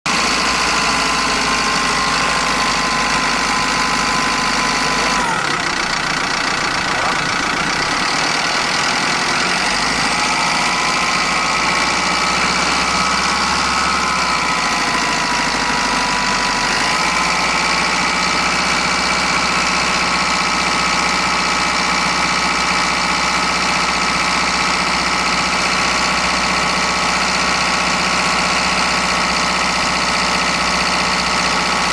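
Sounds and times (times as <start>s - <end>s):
minibus engine idling: 0.1s - 31.9s.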